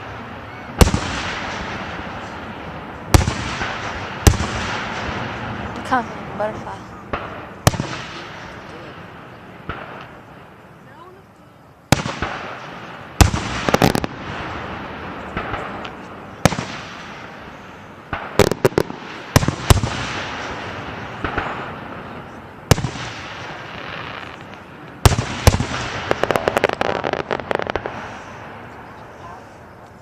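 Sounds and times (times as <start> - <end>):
rapid fireworks pops: 0.0 - 6.1, 7.0 - 8.9, 9.6 - 10.5, 11.9 - 30.0
fireworks bangs: 0.0 - 11.2, 11.9 - 30.0
fireworks hissing: 11.9 - 30.0.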